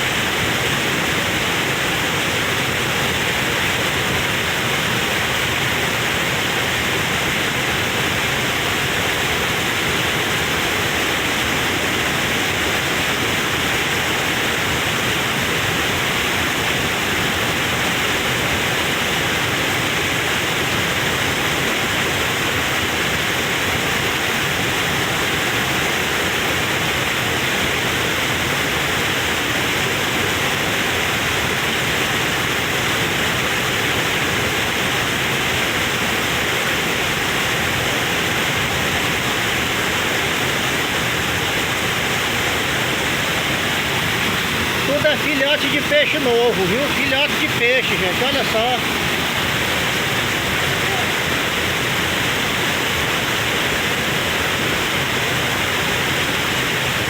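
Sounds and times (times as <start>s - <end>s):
waterfall crashing into pool: 0.0s - 57.0s.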